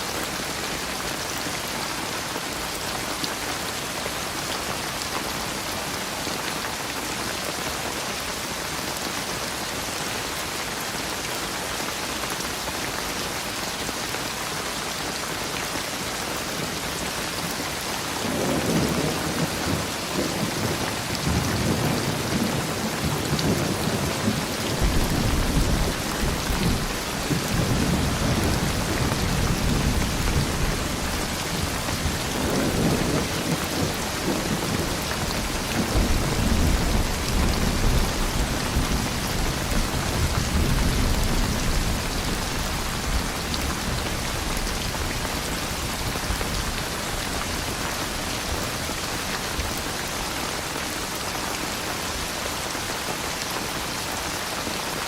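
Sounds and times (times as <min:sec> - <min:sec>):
heavy rain: 0:00.0 - 0:55.0
thunder rumbling: 0:18.3 - 0:47.6.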